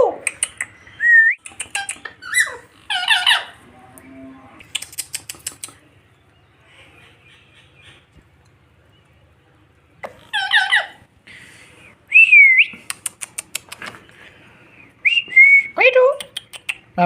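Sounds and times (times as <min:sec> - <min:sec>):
parakeet chattering: 0:00.3 - 0:03.6.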